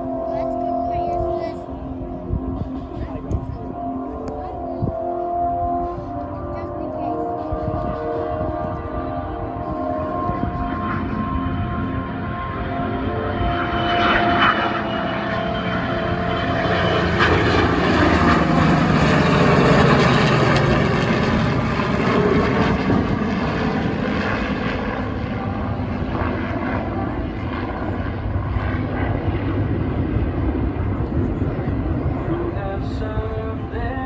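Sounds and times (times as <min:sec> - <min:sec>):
aircraft flying past: 0:00.0 - 0:34.0.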